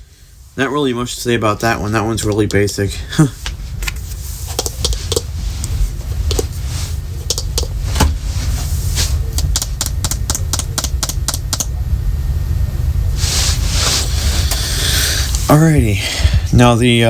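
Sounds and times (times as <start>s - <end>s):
steady low rumble: 0.0s - 17.0s
plastic alarms clicking and clacking: 2.2s - 2.8s, 4.6s - 5.3s, 7.2s - 7.7s, 9.4s - 11.7s.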